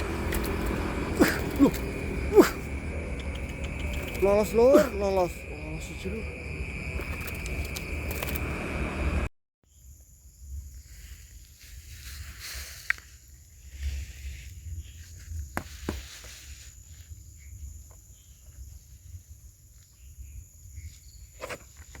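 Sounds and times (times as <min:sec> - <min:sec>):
low rumble of wind on microphone: 0:00.0 - 0:04.6, 0:05.4 - 0:09.3.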